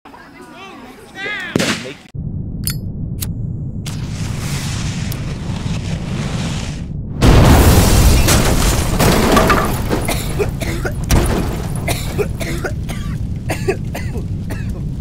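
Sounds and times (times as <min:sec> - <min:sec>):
fireworks pops and crackles: 0:03.9 - 0:06.9
fireworks booms and crackling: 0:03.9 - 0:15.0.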